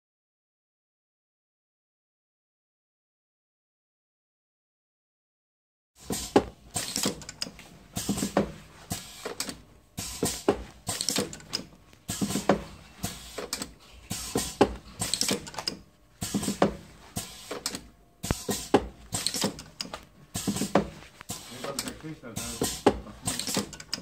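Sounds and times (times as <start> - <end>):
printing machine clacking: 6.0 - 24.0.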